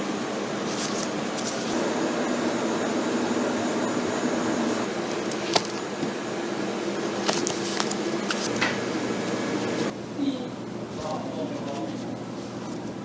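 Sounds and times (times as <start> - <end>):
bread slicer humming: 0.4 - 10.0.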